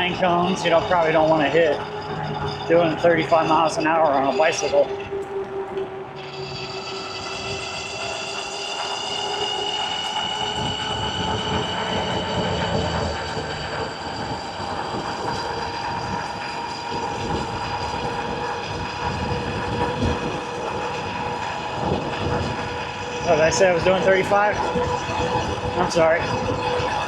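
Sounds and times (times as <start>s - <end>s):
wind: 0.0s - 27.0s
electric motor whining: 4.9s - 16.4s.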